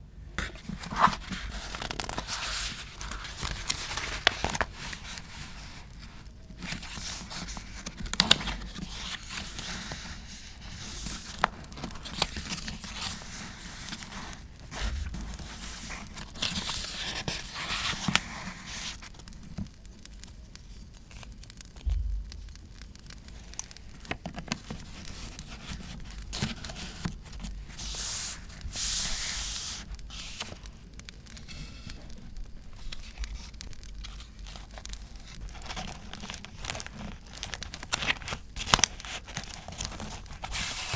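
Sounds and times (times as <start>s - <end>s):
paper tearing and crinkling: 6.6s - 19.2s, 32.7s - 40.9s
crackling campfire: 19.1s - 24.4s, 29.9s - 38.6s.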